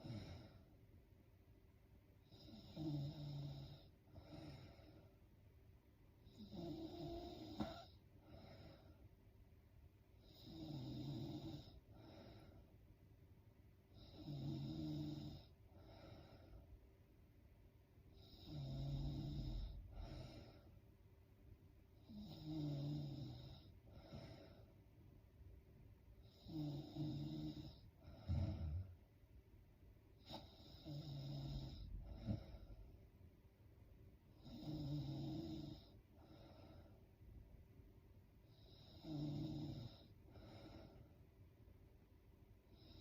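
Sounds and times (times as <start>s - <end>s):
woman snoring: 0.0s - 0.6s, 2.2s - 5.0s, 6.2s - 8.8s, 10.2s - 12.5s, 14.0s - 16.6s, 18.2s - 20.6s, 22.0s - 24.6s, 26.2s - 28.9s, 30.2s - 32.8s, 34.4s - 36.6s, 38.5s - 41.0s.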